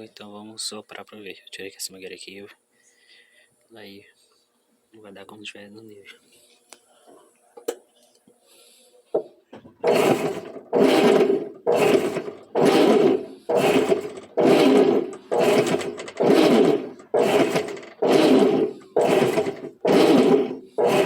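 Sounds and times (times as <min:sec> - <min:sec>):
washing machine agitating: 0:09.8 - 0:21.0.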